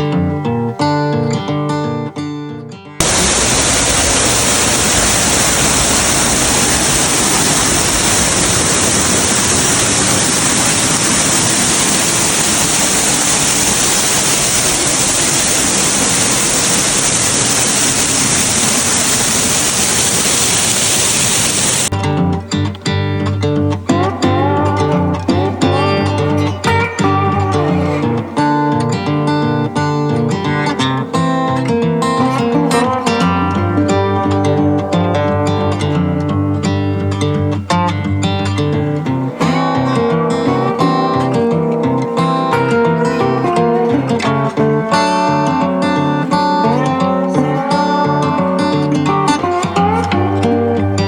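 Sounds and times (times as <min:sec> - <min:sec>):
acoustic guitar music: 0:00.0 - 0:18.9, 0:21.8 - 0:51.0
waterfall rushing: 0:03.0 - 0:21.9.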